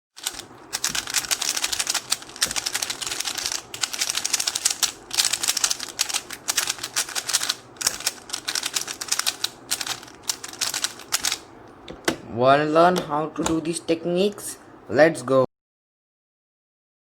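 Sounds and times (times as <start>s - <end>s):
puzzle cube layers clicking: 0.2s - 11.4s.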